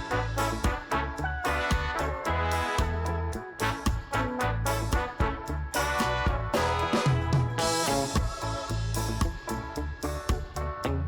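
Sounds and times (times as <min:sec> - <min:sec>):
upbeat swing music: 0:00.0 - 0:11.0.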